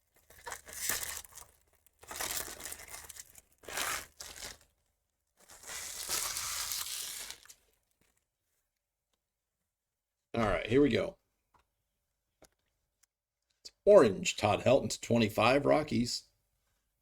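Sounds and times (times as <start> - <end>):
card pack wrapping torn and crinkled: 0.0 - 4.8, 5.4 - 7.8.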